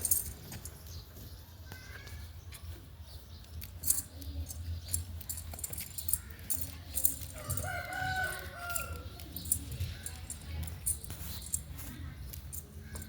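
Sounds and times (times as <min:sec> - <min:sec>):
sharp clicks and rattles: 0:00.0 - 0:01.0, 0:03.4 - 0:13.0
goats moving about: 0:05.0 - 0:13.0.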